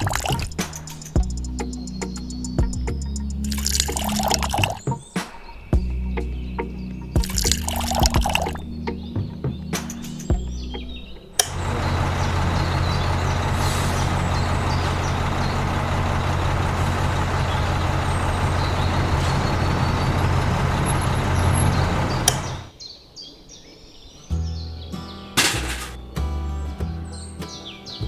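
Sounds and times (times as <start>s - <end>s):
heavy vehicle engine running: 11.5s - 22.7s.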